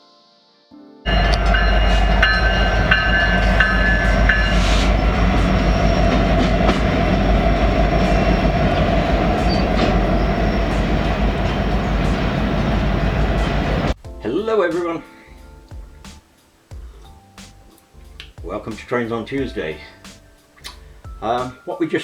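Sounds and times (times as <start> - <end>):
bell-like tone: 1.1 - 13.9
diesel locomotive rumbling: 1.1 - 14.0
wheels clicking over rails: 1.1 - 14.0.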